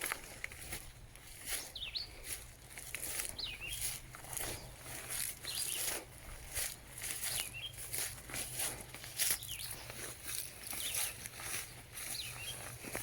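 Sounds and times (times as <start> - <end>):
footsteps on wet mucky trail: 0.0 - 13.0
bird chirping call: 1.6 - 2.2, 3.2 - 4.7, 5.4 - 6.0, 7.2 - 7.9, 9.2 - 12.8.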